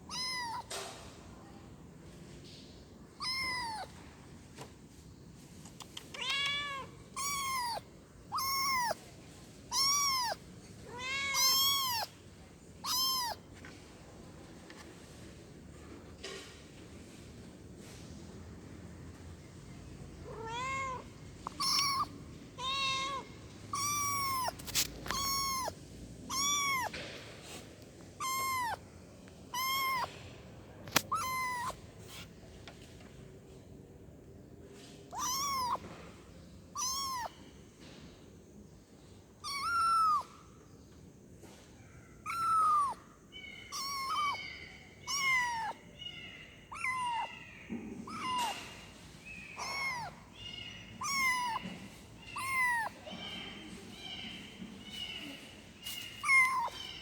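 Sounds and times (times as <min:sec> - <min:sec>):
kitten meowing: 0:00.1 - 0:00.7, 0:03.2 - 0:03.9, 0:06.1 - 0:09.0, 0:09.7 - 0:12.1, 0:12.8 - 0:13.4, 0:20.3 - 0:27.0, 0:28.2 - 0:28.8, 0:29.5 - 0:30.1, 0:30.9 - 0:31.8, 0:35.1 - 0:35.8, 0:36.8 - 0:37.4, 0:39.4 - 0:40.3, 0:42.2 - 0:43.0, 0:43.6 - 0:53.0, 0:55.9 - 0:57.0.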